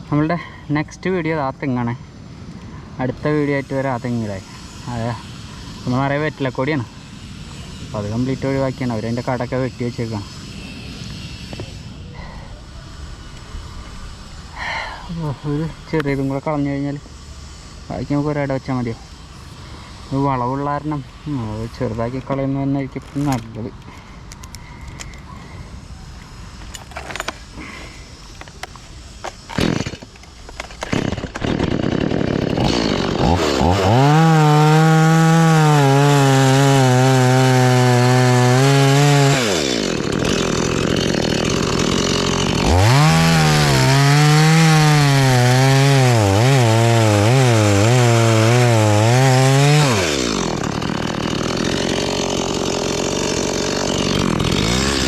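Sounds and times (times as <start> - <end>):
chainsaw cutting wood: 2.6 - 11.9, 26.2 - 55.0.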